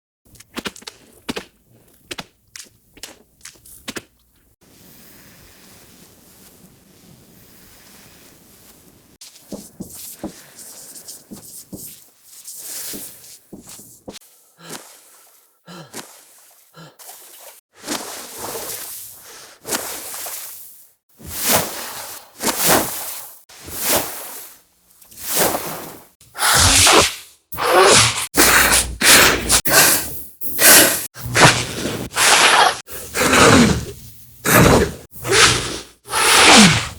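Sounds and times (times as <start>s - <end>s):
breaststroke water sloshing: 14.1s - 20.5s
backstroke swimming splashes: 14.1s - 20.7s
woman grunting and breathing hard: 15.7s - 16.0s.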